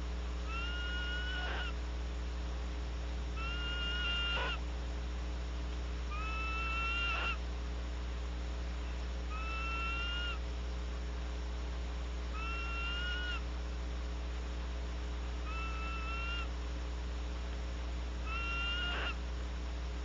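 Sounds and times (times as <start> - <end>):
electrical hum: 0.0 - 20.0
barn owl screeching: 0.4 - 1.8, 3.4 - 4.6, 6.1 - 7.4, 9.3 - 10.4, 12.3 - 13.4, 15.4 - 16.5, 18.2 - 19.2.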